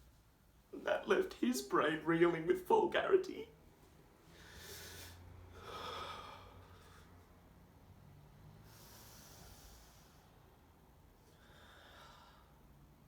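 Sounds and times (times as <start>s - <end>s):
man breathing heavily: 4.2s - 7.3s, 11.3s - 12.8s.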